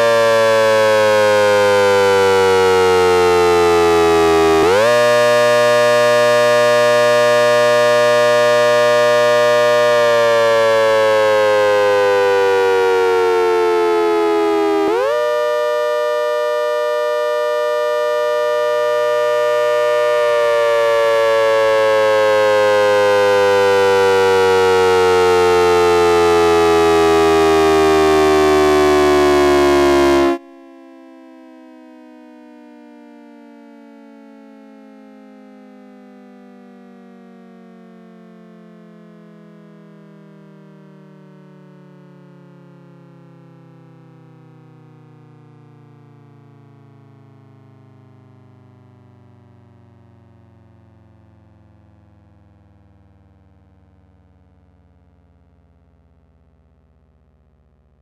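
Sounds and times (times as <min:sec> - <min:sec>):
siren chord rising and winding down: 0:00.0 - 0:30.4.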